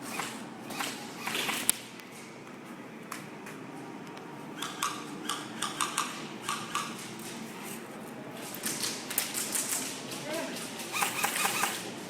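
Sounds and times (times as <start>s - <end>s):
airsoft guns firing: 10.9s - 11.9s.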